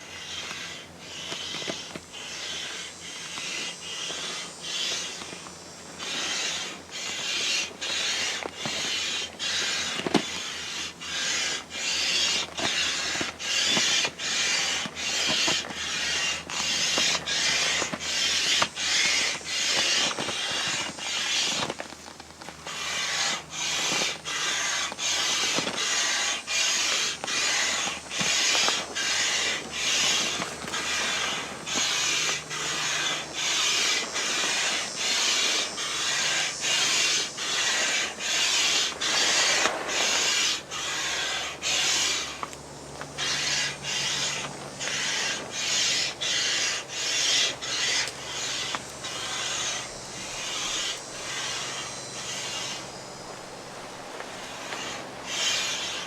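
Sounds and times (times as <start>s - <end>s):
air pump hissing strokes: 0.0s - 56.0s.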